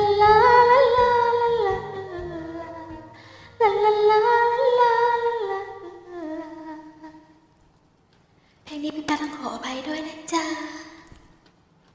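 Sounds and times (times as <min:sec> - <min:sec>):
woman singing wordless notes: 0:00.0 - 0:07.3.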